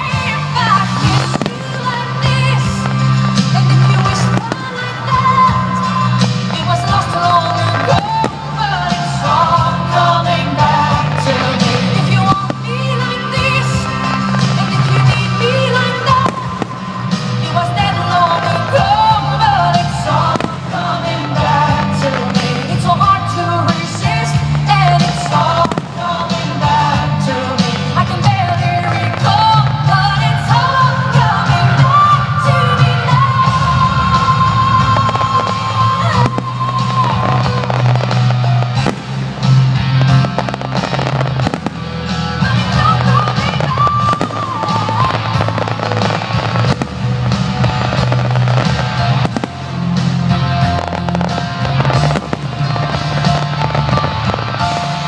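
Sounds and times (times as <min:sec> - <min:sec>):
woman singing pop song: 0:00.0 - 0:38.0, 0:42.3 - 0:46.4
fireworks bursting with bangs: 0:00.0 - 0:55.0
loud music over sound system: 0:00.0 - 0:55.0.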